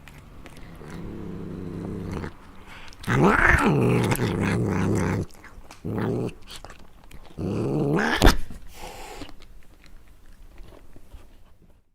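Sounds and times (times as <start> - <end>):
cat chewing clicks: 0.0 - 3.4
cat growling: 0.0 - 9.3.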